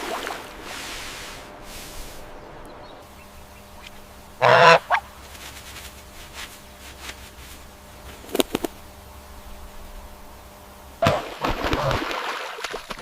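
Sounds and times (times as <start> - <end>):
goose honking: 4.4 - 5.1.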